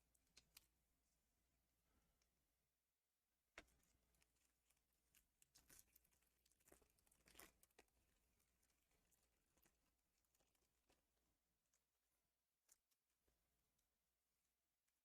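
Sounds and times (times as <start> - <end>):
crackles: 0.0 - 0.7, 3.6 - 12.0.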